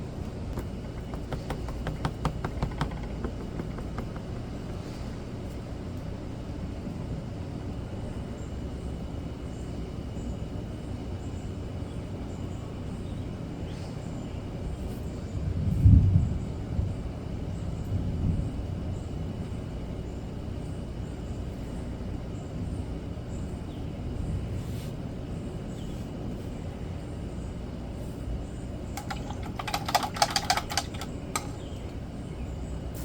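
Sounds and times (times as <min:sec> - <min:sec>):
sharp taps and drips: 0:00.5 - 0:04.9, 0:29.0 - 0:32.0.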